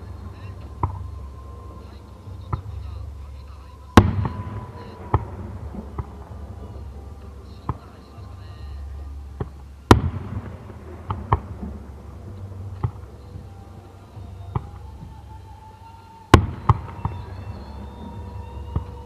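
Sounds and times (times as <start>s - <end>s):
faint firework bangs: 0.0s - 19.0s
firework shells booming: 0.0s - 19.0s
steady low rumble: 0.0s - 19.0s.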